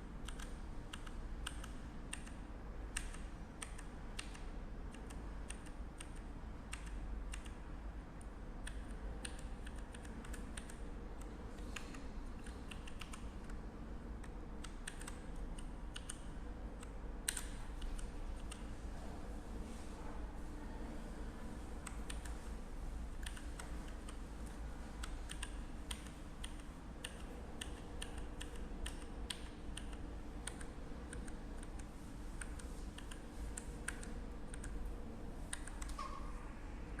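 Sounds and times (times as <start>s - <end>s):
steady low hum: 0.0s - 37.0s
mechanical keyboard typing clicks: 14.2s - 16.2s, 16.8s - 18.7s, 23.2s - 24.2s.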